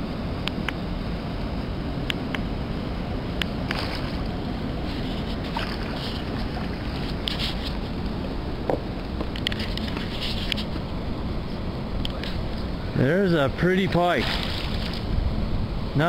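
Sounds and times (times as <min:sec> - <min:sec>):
wind on microphone: 0:00.0 - 0:16.0
river water rushing: 0:03.6 - 0:09.0, 0:12.4 - 0:16.0.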